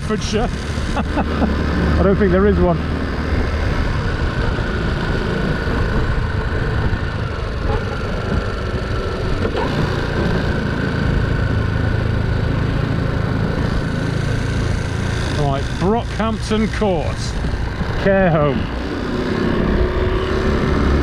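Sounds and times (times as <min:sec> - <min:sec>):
motorcycle engine cruising: 0:00.0 - 0:21.0
wind and road rush: 0:00.0 - 0:21.0.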